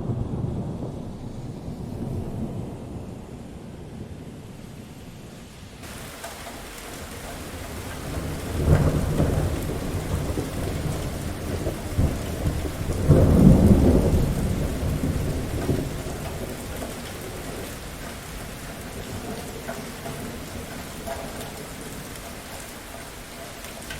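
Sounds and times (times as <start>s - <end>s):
thunder rolling: 0.0s - 5.2s, 5.8s - 22.4s
steady rain: 0.0s - 23.9s.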